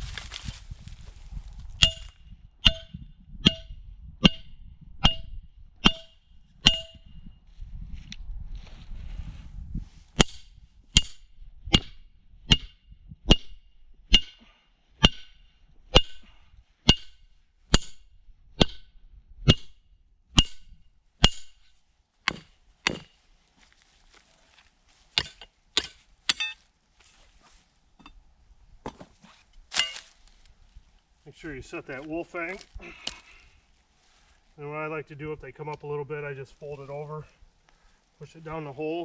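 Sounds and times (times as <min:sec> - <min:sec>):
hammer blows on metal ringing: 0:01.8 - 0:07.2.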